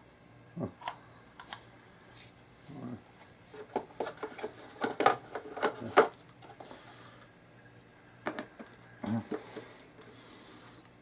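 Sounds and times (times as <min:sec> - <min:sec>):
plastic parts clicking and knocking: 0:03.6 - 0:06.6.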